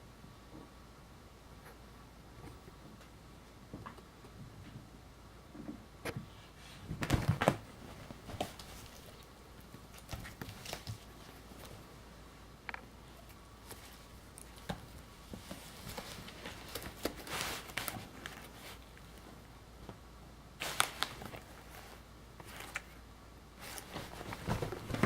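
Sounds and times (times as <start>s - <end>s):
rustling and scratching: 6.6s - 12.0s, 12.7s - 19.4s, 20.6s - 23.0s, 23.6s - 25.0s
paws and claws clicking: 8.3s - 11.8s.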